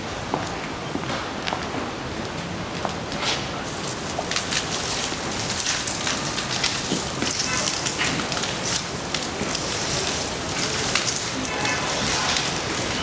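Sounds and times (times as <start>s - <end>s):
plastic legs clattering on sand: 2.7s - 13.0s.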